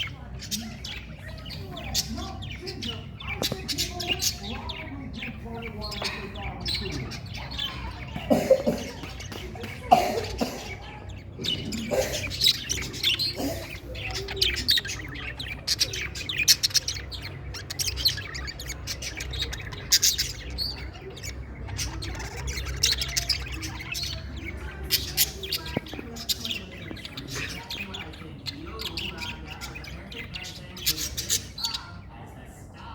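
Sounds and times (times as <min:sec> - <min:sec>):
budgerigars chirping: 0:00.0 - 0:32.9.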